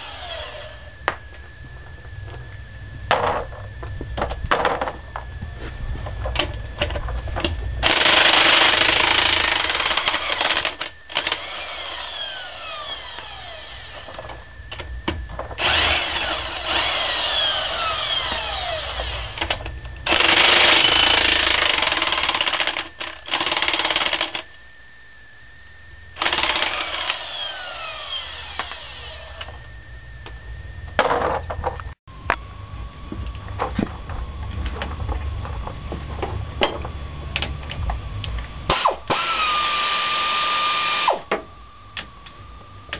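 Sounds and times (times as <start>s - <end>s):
hammering power tool: 0.0s - 0.8s, 7.8s - 14.3s, 15.1s - 24.4s, 26.2s - 29.5s, 38.7s - 41.4s.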